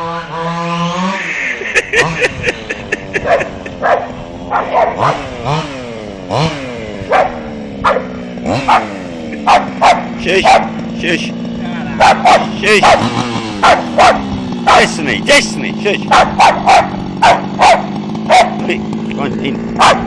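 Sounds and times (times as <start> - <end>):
dog barking: 3.2 - 5.1, 7.1 - 8.1, 8.7 - 10.8, 12.0 - 15.0, 16.1 - 18.7, 19.8 - 20.0.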